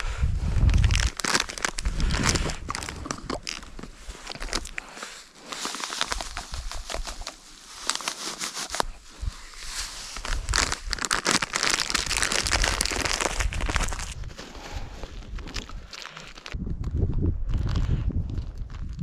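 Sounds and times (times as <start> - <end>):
crinkling and rustling: 0.6 - 16.6
small sharp clicks and crackles: 0.9 - 9.0.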